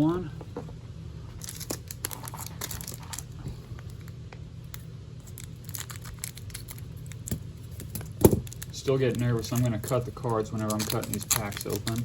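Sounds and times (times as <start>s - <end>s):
foil wrapper crinkling: 1.4s - 4.2s, 5.2s - 12.0s
trading cards being handled: 1.4s - 12.0s.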